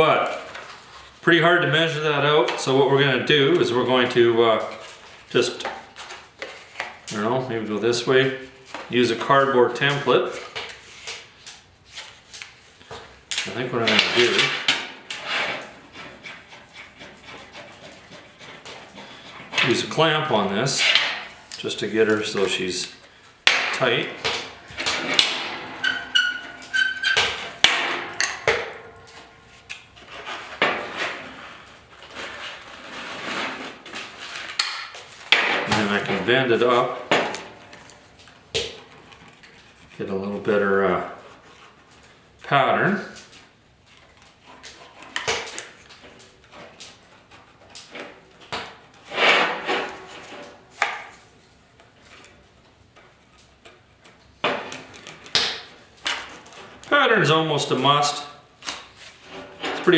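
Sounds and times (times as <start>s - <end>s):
metal scraping: 13.5s - 34.6s
metal knocks and clinks: 23.7s - 29.4s
cardboard rustling and scraping: 23.8s - 42.3s, 58.6s - 59.9s.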